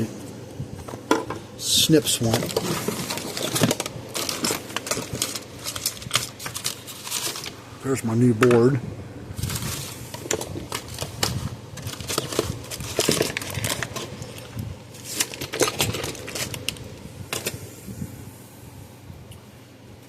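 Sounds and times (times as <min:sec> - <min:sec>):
hard parts clicking and rattling: 0:02.1 - 0:07.6, 0:09.4 - 0:17.6.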